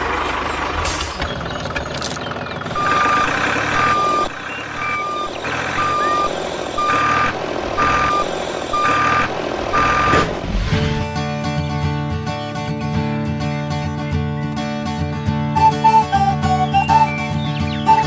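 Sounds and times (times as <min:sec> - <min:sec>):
vehicle reversing alarm beeping: 0:02.5 - 0:10.4, 0:15.6 - 0:18.0.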